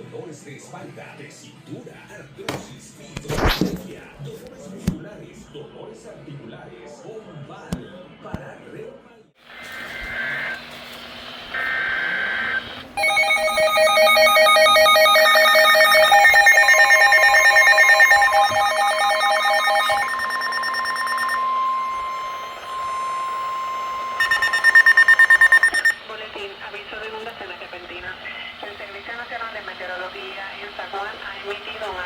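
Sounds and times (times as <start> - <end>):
digital header data burst: 11.6 - 26.1
electronic alert tone pulsing: 13.0 - 26.0
steady high tone: 13.0 - 26.0
fast beeping: 13.0 - 26.1.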